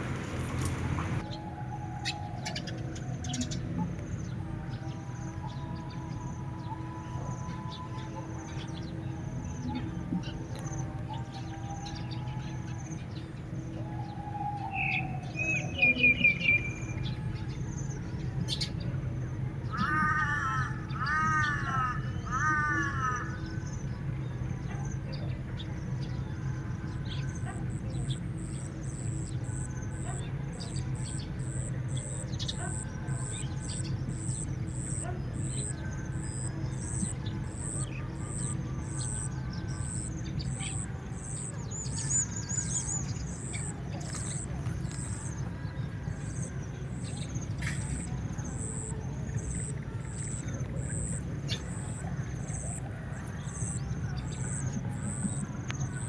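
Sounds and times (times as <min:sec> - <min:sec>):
harsh bird calls: 0:19.6 - 0:23.9, 0:27.0 - 0:56.0.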